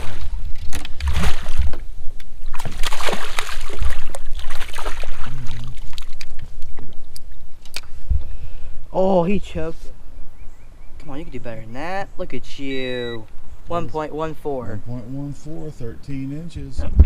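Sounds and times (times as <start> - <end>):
water splashing around boat: 0.0 - 7.4
wind buffeting microphone: 15.9 - 17.0.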